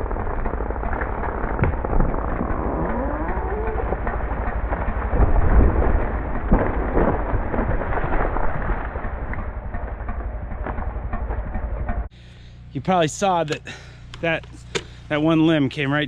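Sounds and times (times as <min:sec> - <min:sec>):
tree crashing to ground: 0:00.0 - 0:12.0
limbs impacting ground: 0:00.0 - 0:12.1.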